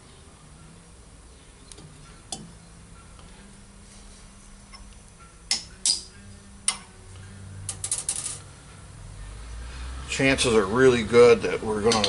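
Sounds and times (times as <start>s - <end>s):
small metal parts clinking: 7.7s - 8.5s.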